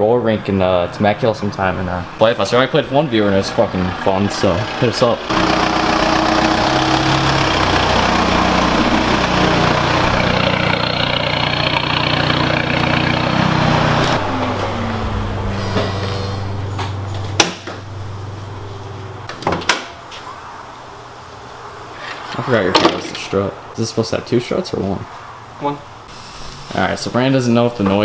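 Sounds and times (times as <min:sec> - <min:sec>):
car engine running: 0:00.7 - 0:19.3.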